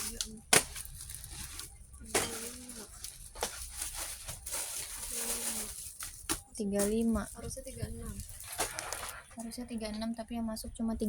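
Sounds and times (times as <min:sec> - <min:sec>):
packages knocking and clacking: 0:00.0 - 0:09.9.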